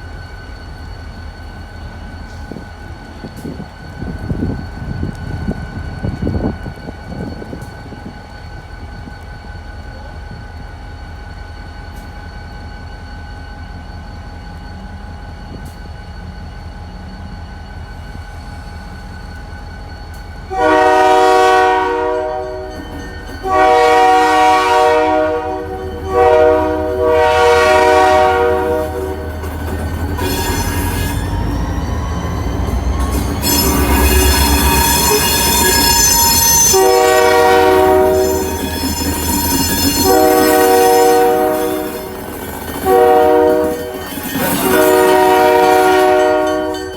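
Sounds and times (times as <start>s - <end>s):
diesel locomotive rumbling: 0.0s - 46.9s
rail noise: 0.0s - 46.9s
train air horn blasts: 20.5s - 22.8s, 23.4s - 29.4s, 33.1s - 42.1s, 42.8s - 46.9s
wheel squeal: 28.9s - 36.8s, 37.7s - 42.8s.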